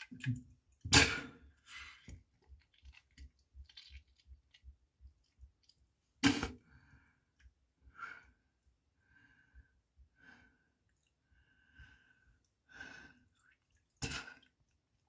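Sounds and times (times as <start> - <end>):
wet clicks and drips: 0.0 - 0.9, 2.0 - 6.1, 13.3 - 15.0
person retching: 0.8 - 1.4, 6.2 - 6.6
short throat sounds: 0.8 - 1.4, 6.2 - 6.6.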